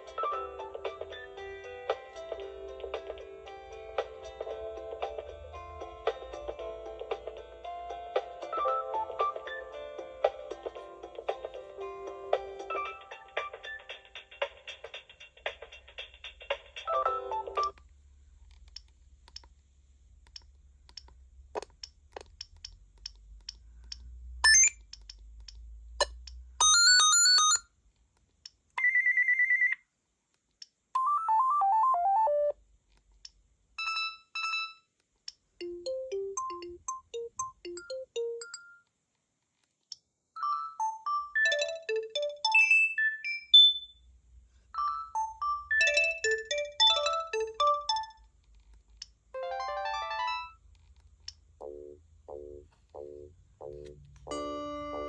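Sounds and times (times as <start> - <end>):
phone ringtones: 24.4 - 24.8, 26.6 - 27.6.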